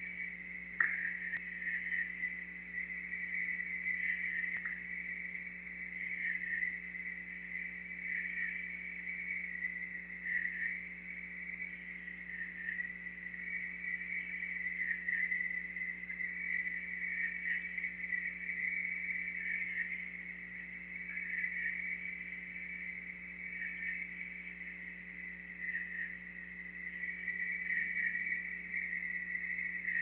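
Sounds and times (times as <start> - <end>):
low steady hum: 0.0 - 30.0
night insects chirring: 0.0 - 30.0
faint tick: 0.7 - 1.5, 4.5 - 4.9.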